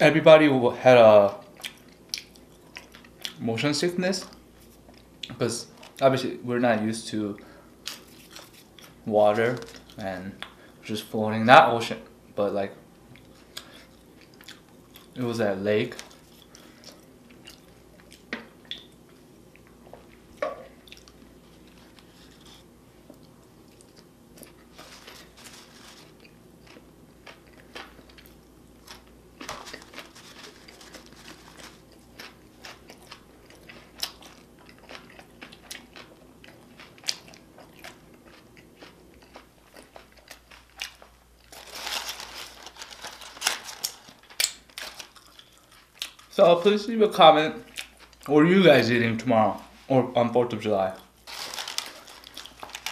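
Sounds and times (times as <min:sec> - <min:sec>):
chewing and biting: 0:21.9 - 0:41.8.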